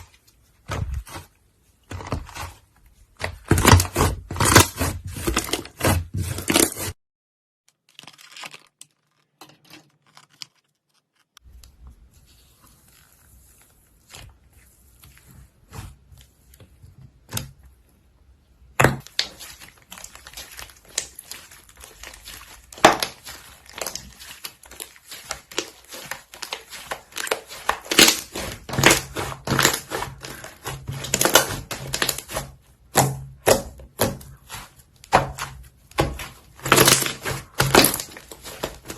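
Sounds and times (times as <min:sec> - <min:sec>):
slime crackling and popping: 0:19.0 - 0:38.9.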